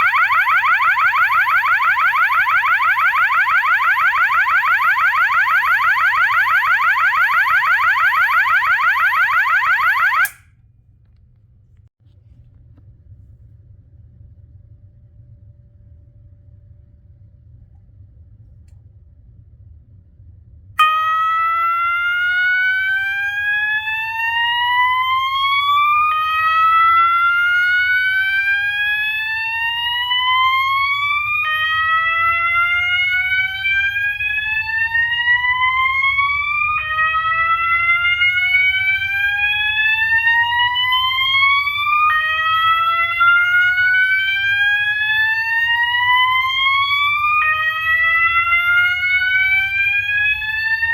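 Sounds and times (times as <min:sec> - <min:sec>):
fire alarm whoop tone: 0:00.0 - 0:10.4, 0:20.8 - 0:50.9.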